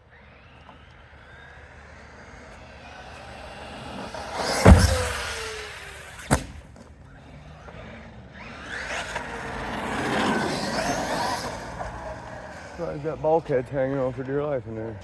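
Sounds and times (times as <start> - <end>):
electric motor whining: 0.0 - 15.0
rc truck hitting ground: 0.7 - 6.9, 8.4 - 13.6.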